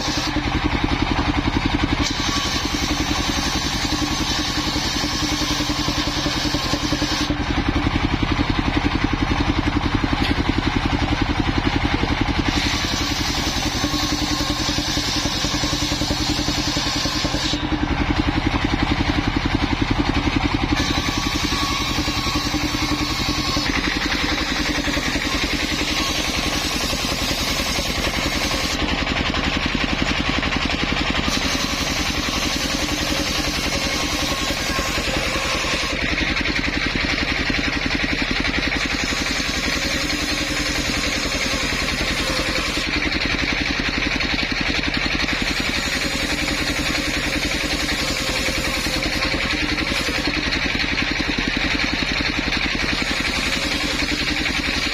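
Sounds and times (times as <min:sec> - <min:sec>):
saw blade ripping wood hiss: 0:00.0 - 0:07.4, 0:12.4 - 0:17.8, 0:20.7 - 0:29.0, 0:30.6 - 0:36.2, 0:38.6 - 0:43.0, 0:45.3 - 0:50.5, 0:52.6 - 0:54.9
saw engine putting: 0:00.0 - 0:54.9.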